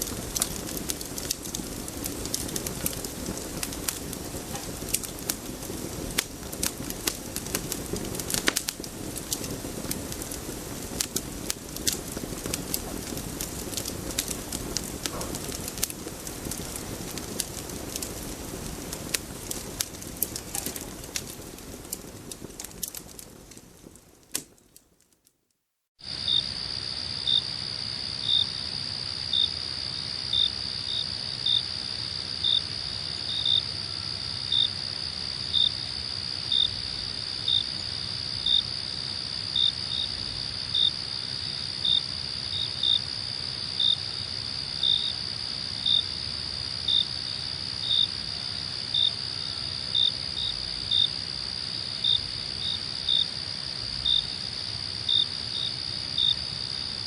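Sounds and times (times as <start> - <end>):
crickets trilling: 0.0 - 24.7, 26.0 - 57.0
sharp cricket chirp: 26.0 - 57.0.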